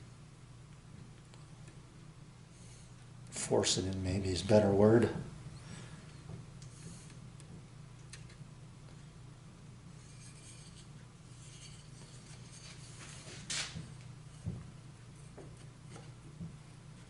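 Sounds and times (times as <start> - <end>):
low steady hum: 0.0 - 17.0
wooden molding scraping: 9.9 - 14.6
soft rubbing of wood: 9.9 - 17.0.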